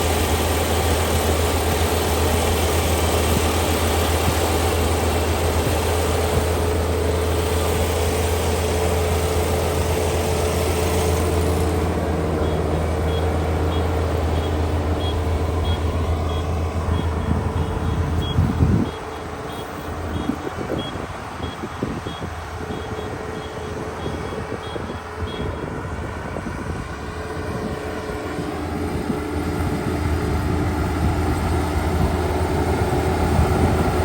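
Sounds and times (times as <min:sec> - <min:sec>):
combine harvester engine running: 0:00.0 - 0:34.0
short high beeps: 0:12.4 - 0:25.6.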